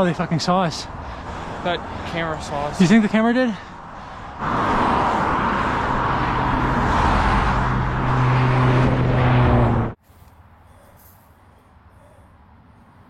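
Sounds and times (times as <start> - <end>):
motor vehicle running: 1.0 - 10.0.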